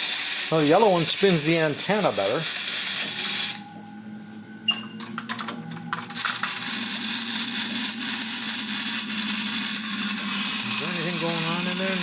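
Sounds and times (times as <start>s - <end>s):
clockwork toy whirring: 0.0s - 3.6s, 6.1s - 12.0s.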